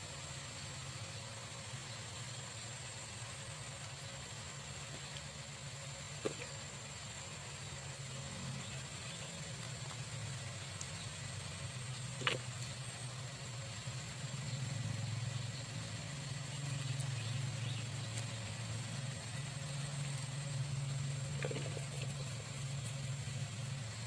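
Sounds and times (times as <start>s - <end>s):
low engine-like hum: 0.0s - 24.0s
faint ticks: 9.2s - 11.1s.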